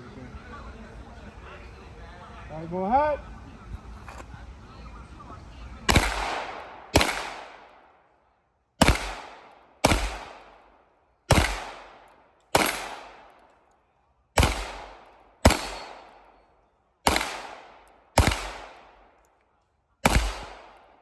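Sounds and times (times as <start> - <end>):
gunshots: 5.9 - 7.8, 8.8 - 10.7, 11.3 - 13.4, 14.4 - 16.3, 17.0 - 19.2, 20.0 - 21.0.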